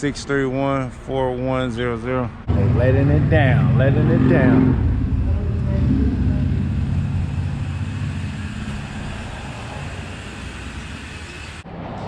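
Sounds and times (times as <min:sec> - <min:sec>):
car lift mechanical hum: 0:02.5 - 0:11.7.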